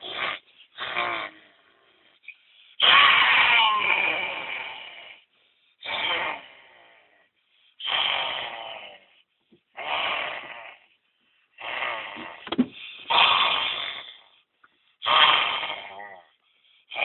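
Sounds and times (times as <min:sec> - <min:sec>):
boy making raspy vocal noises: 0:00.0 - 0:02.0, 0:02.8 - 0:05.2, 0:05.8 - 0:07.2.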